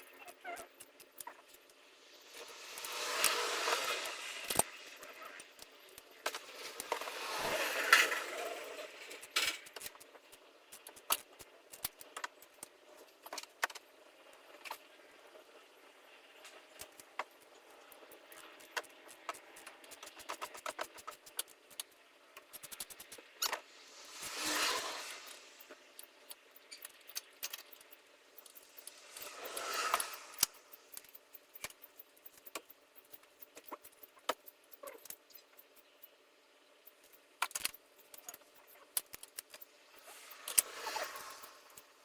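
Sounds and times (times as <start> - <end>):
scraping or rustling burst: 23.9 - 25.8.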